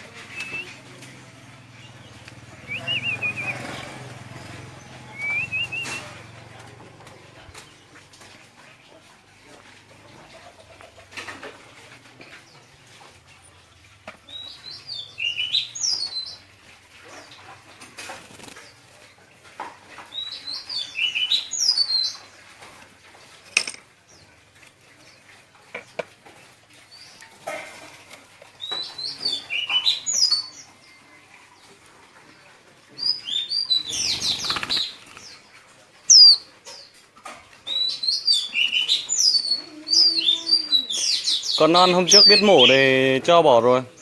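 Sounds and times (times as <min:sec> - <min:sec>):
birds twittering song: 0:00.0 - 0:44.0
sharp taps and flutters: 0:34.0 - 0:35.4.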